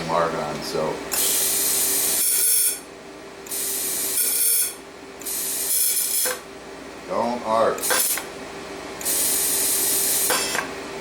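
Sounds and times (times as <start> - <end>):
gas hissing bursts: 1.1 - 2.8, 3.5 - 6.4, 7.8 - 8.2, 9.0 - 10.6
welding machine hum: 1.1 - 2.9, 3.5 - 6.6, 7.8 - 8.3, 9.0 - 10.7.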